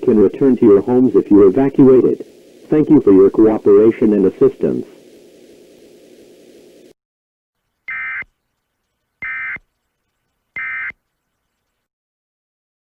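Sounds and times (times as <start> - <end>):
faint background hum: 0.0 - 6.9
digital data tone bursts: 7.9 - 8.3, 9.2 - 9.6, 10.6 - 11.0.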